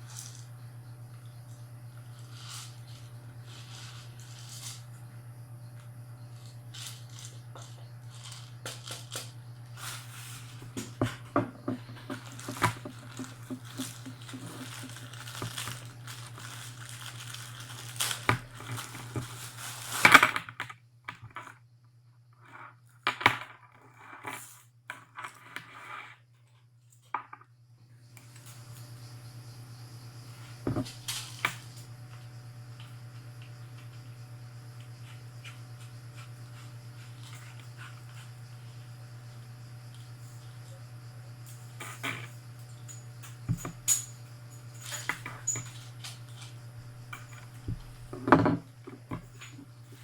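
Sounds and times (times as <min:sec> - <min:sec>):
low steady hum: 0:00.0 - 0:20.0
plastic packaging crinkling: 0:06.4 - 0:10.6, 0:12.0 - 0:20.2.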